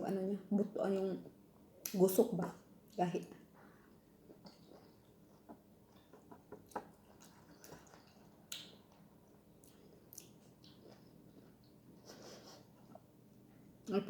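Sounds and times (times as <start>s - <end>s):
wet mouth chewing sounds: 3.7s - 11.9s.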